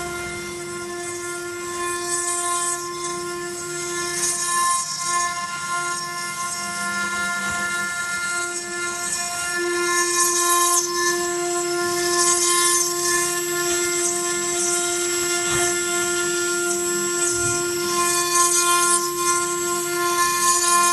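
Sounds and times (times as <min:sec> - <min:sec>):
grinding stone cutting noise: 0:00.0 - 0:20.9
router spindle whine: 0:00.0 - 0:20.9.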